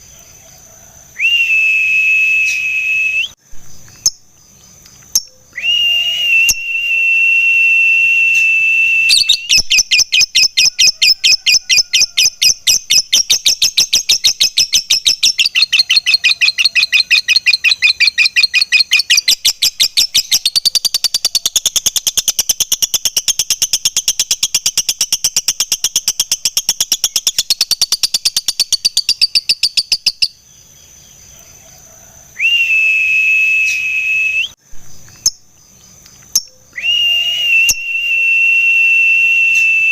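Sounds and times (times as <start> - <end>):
high whistling tone: 1.2 - 3.4, 5.5 - 9.7, 32.4 - 34.6, 36.7 - 39.9
bird chattering trill: 9.1 - 30.4.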